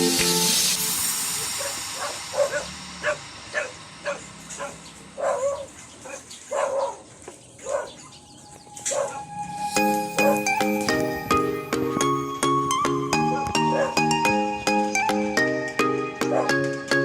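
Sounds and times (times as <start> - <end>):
dog barking: 1.6 - 8.2, 8.9 - 9.3, 13.3 - 14.0, 16.3 - 16.6.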